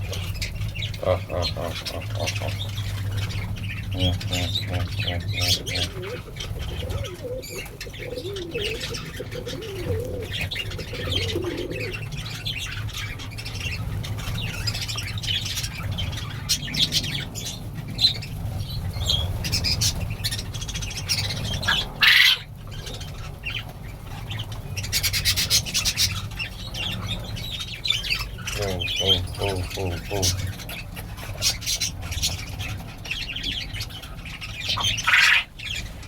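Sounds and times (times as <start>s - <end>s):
bird squawk: 0.0s - 18.3s, 19.0s - 35.9s
low steady hum: 0.0s - 21.7s
pigeons cooing: 0.0s - 36.0s
small birds chirping: 0.0s - 36.0s.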